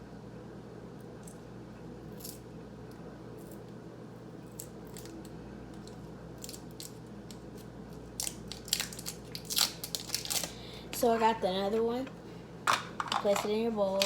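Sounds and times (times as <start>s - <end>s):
candy wrapper crinkling: 5.9s - 10.7s.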